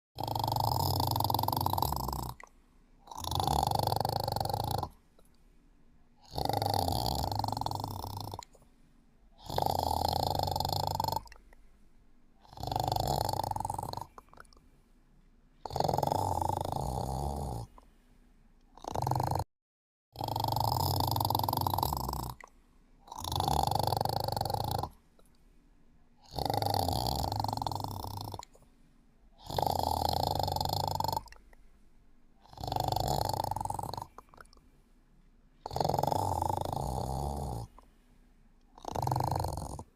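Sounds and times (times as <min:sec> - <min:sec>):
person snoring: 0:00.2 - 0:05.1, 0:06.2 - 0:08.7, 0:09.4 - 0:11.5, 0:12.4 - 0:14.6, 0:15.6 - 0:17.8, 0:18.8 - 0:19.5, 0:20.2 - 0:25.0, 0:26.2 - 0:28.6, 0:29.4 - 0:31.5, 0:32.4 - 0:34.6, 0:35.6 - 0:37.9, 0:38.7 - 0:39.9.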